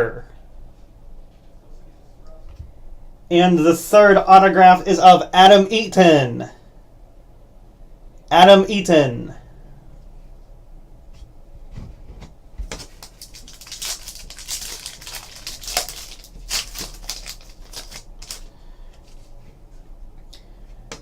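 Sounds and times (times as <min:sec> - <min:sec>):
cards ticking: 0:12.7 - 0:18.5
wrapper tearing and crinkling: 0:12.7 - 0:18.5.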